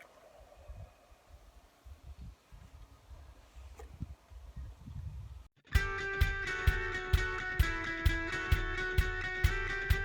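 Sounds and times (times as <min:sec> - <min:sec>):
guitar music over a steady beat: 0:05.7 - 0:10.0.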